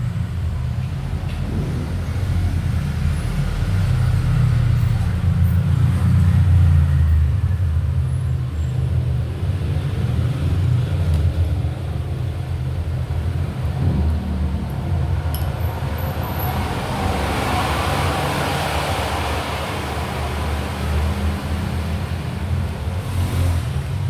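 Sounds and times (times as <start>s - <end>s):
steady low rumble: 0.0s - 4.4s.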